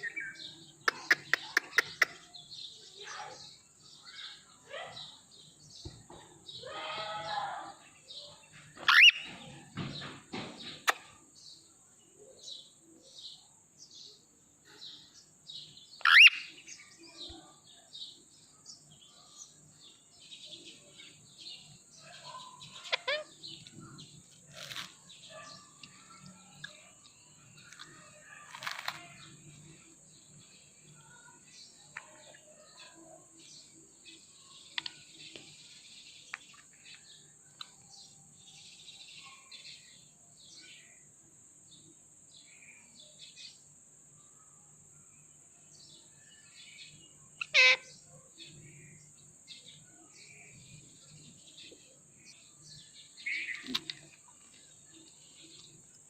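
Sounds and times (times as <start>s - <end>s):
parrot chirping: 8.8s - 9.3s, 16.0s - 16.6s, 22.6s - 23.4s, 47.4s - 47.9s
parrot shrill screeches: 8.8s - 9.3s, 16.0s - 16.5s, 47.4s - 47.9s.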